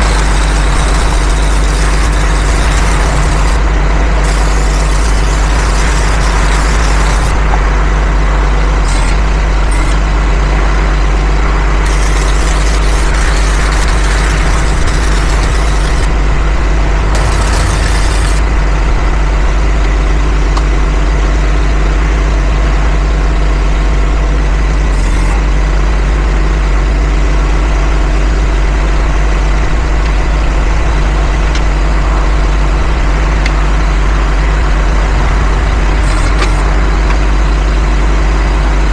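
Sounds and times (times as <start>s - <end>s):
welding hiss and crackle: 0.0s - 7.6s, 8.8s - 10.0s, 11.8s - 16.2s, 17.0s - 18.5s, 35.4s - 37.2s
engine idling: 0.0s - 38.9s.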